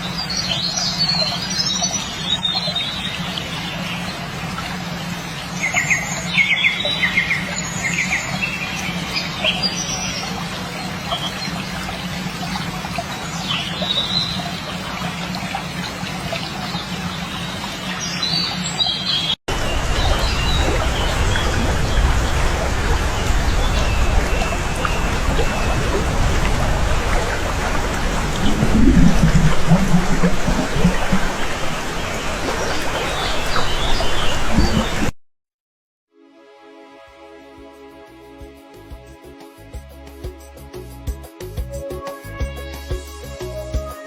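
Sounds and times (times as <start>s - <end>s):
small birds chirping and trilling: 0.0s - 4.2s, 5.4s - 14.8s, 16.4s - 35.1s
louder rough noise: 24.6s - 32.7s.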